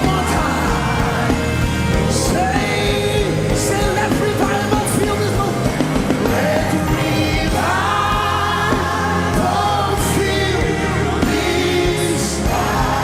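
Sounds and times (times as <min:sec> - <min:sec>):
gospel band playing: 0:00.0 - 0:13.0
voices singing long notes: 0:00.0 - 0:13.0.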